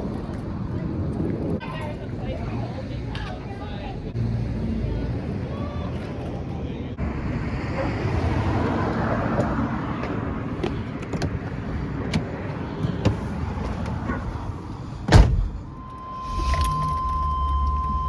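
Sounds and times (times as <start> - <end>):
vehicle rumble: 0.0 - 18.0
car door slamming: 12.0 - 14.3, 15.0 - 15.9.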